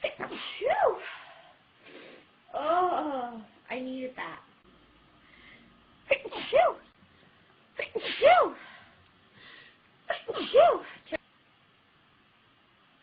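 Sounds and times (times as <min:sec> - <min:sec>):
woman sneezing: 0:00.0 - 0:01.3, 0:06.1 - 0:06.8, 0:07.8 - 0:08.8, 0:10.1 - 0:11.2.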